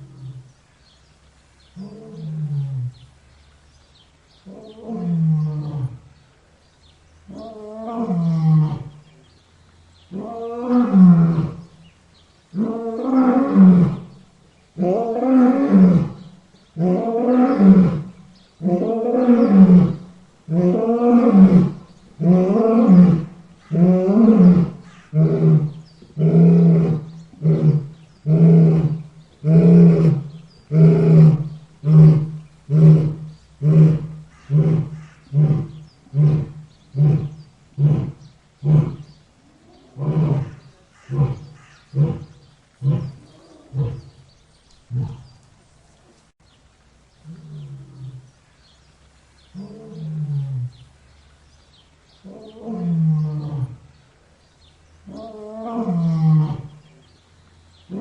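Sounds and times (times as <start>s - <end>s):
lion roaring and grunting: 16.8s - 44.2s, 44.9s - 45.4s, 55.1s - 56.8s.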